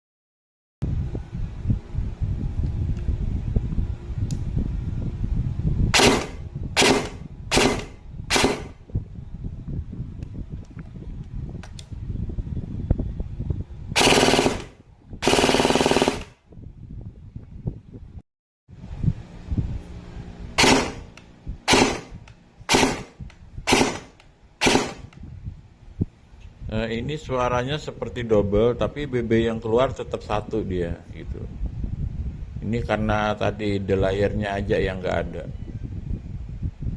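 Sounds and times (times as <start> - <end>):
low rumble: 0.8 - 33.2
airsoft gun shots: 6.0 - 8.8, 14.0 - 16.4, 20.6 - 21.1, 21.7 - 25.1.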